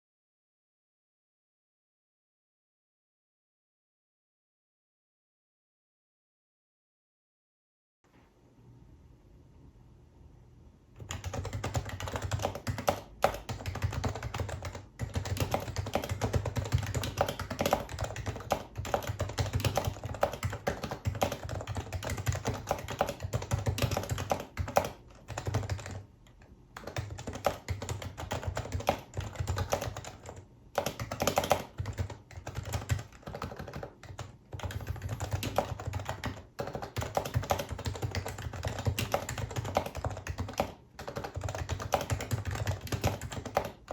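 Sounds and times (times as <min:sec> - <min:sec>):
fast typing on keyboard: 0:11.0 - 0:26.1, 0:26.8 - 0:43.9.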